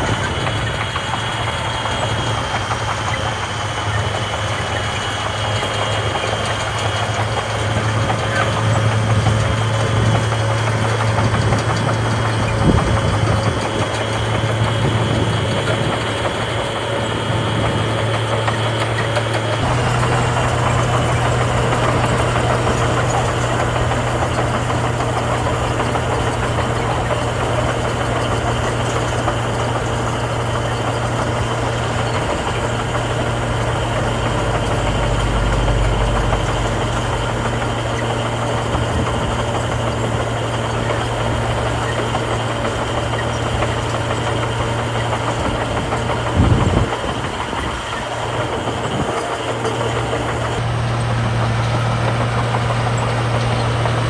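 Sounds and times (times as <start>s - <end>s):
heavy diesel engines running: 0.0s - 54.0s
deep rumble: 32.1s - 40.4s.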